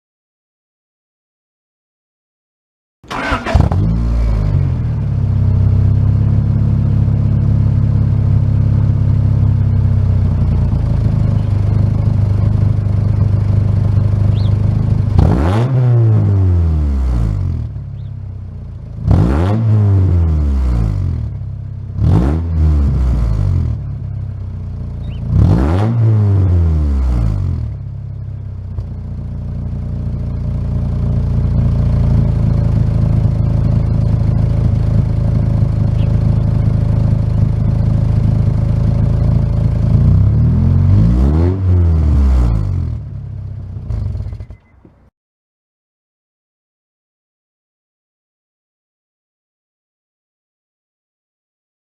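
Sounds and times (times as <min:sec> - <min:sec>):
engine revs blipped: 0:03.0 - 0:18.2, 0:18.9 - 0:21.4, 0:22.0 - 0:24.2, 0:24.8 - 0:28.2, 0:30.0 - 0:45.1
car exhaust idling: 0:03.1 - 0:15.3, 0:27.7 - 0:40.4.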